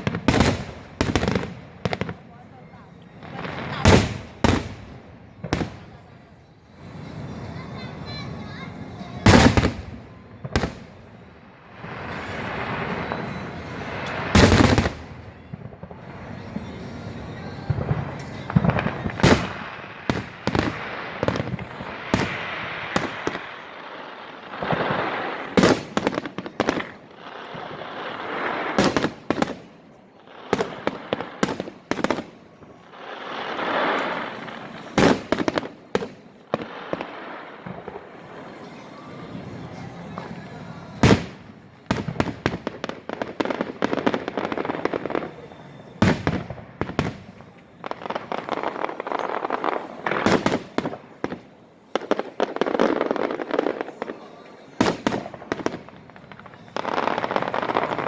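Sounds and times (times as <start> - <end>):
firework bang: 0.0 - 2.2, 6.9 - 11.0, 11.7 - 23.6, 46.0 - 51.4
fireworks crackling and hissing: 0.0 - 58.0.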